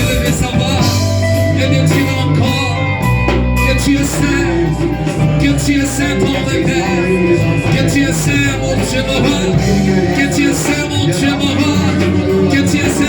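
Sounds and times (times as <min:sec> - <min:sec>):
bass guitar: 0:00.0 - 0:13.0
electric guitar: 0:00.0 - 0:13.0
faint singing: 0:00.0 - 0:13.0.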